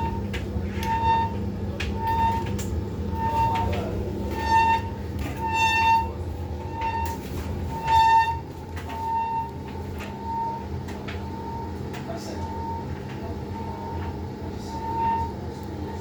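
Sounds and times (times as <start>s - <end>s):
high-pitched squeak: 0.0s - 1.4s, 4.3s - 9.5s
tumble dryer drum rumbling: 0.0s - 16.0s.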